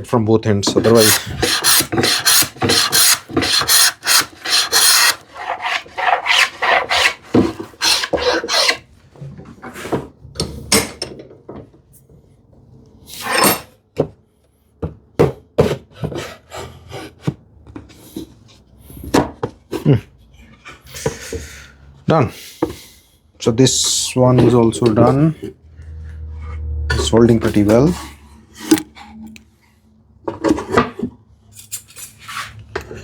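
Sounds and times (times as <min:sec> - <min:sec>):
hand plane shaving wood: 0:00.7 - 0:08.8.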